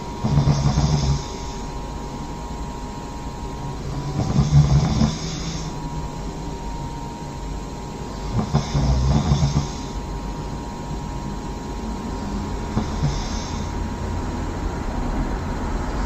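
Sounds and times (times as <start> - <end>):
person snoring loudly: 0.0 - 1.7, 3.9 - 5.8, 8.2 - 10.1, 12.3 - 14.0.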